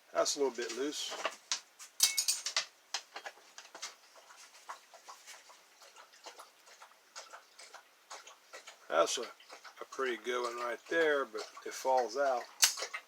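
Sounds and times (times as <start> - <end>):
lockpicking tools clinking in lock: 2.0 - 2.6.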